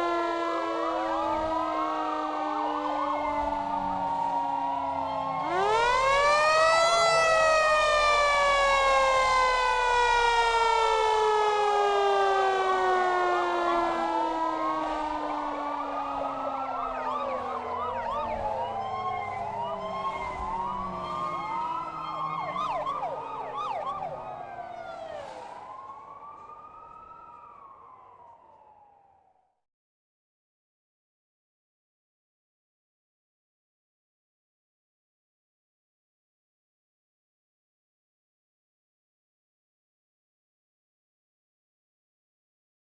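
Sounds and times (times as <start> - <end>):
police sirens wailing: 0.0 - 29.4
siren winding down: 0.0 - 29.4.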